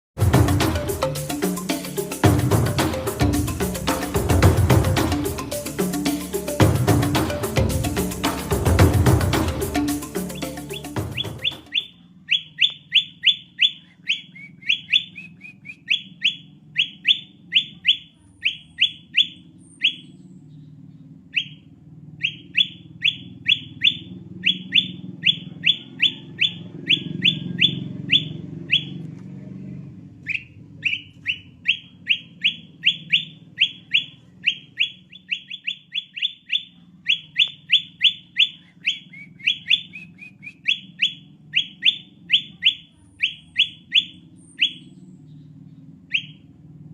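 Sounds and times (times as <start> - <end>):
bird whistled calls: 9.8 - 29.0, 30.2 - 46.5.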